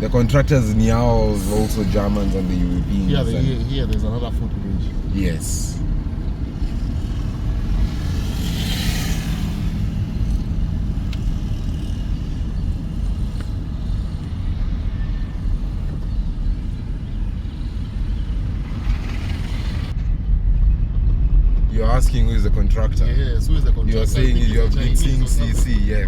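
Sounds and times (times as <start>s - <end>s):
car road rumble: 0.0s - 26.0s.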